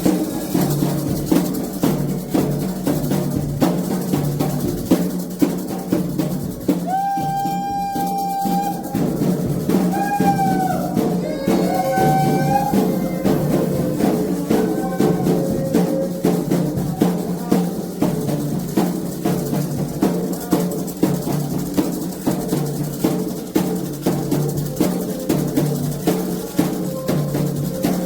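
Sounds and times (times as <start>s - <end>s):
hand drums fast rhythm: 0.0s - 28.0s
faint singing: 6.8s - 18.8s, 24.6s - 28.0s.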